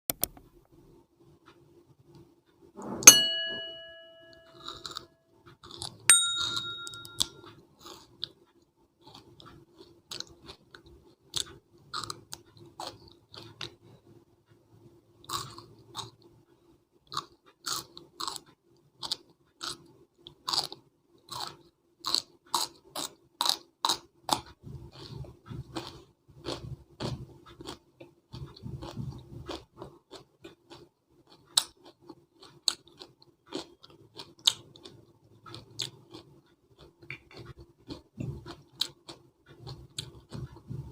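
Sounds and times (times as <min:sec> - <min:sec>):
bell-like dings: 0:02.8 - 0:04.8, 0:06.1 - 0:07.5.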